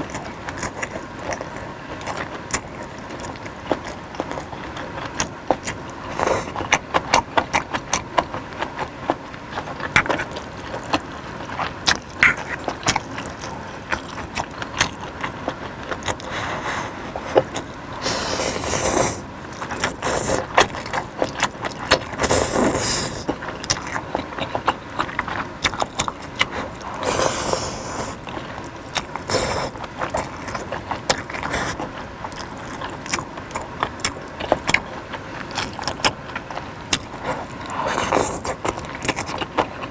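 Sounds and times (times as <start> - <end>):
crunching while chewing: 0.0 - 39.9
wet mouth clicks: 11.9 - 34.9.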